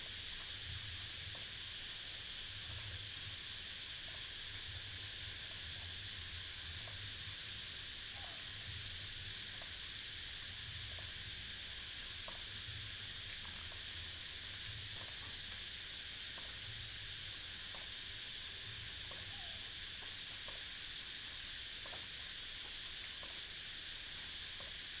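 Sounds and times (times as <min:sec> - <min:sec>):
crickets chirping: 0:00.0 - 0:25.0.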